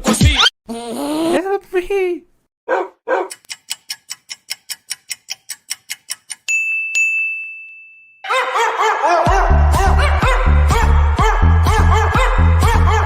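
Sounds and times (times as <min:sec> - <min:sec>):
rapid even ticking: 0:03.3 - 0:06.5
bright ding: 0:06.5 - 0:08.2
music with heavy bass beat: 0:09.3 - 0:13.0.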